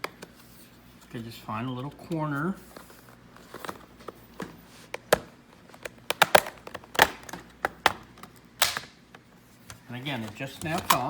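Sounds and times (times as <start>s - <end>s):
plastic tabs clicking and snapping: 5.0s - 9.2s.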